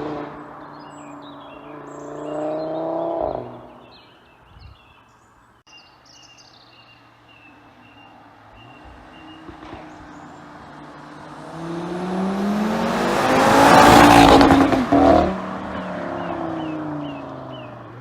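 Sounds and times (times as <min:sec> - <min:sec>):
car accelerating past: 0:00.0 - 0:03.9, 0:08.3 - 0:18.0
birds chirping faintly: 0:00.4 - 0:12.3, 0:16.0 - 0:18.0.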